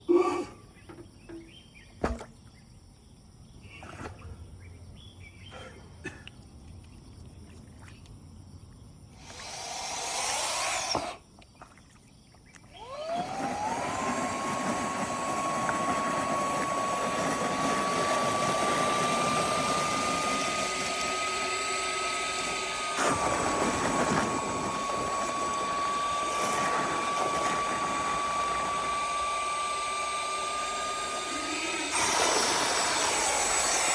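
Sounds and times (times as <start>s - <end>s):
handheld vacuum cleaner whine: 9.2s - 11.2s, 12.7s - 33.9s.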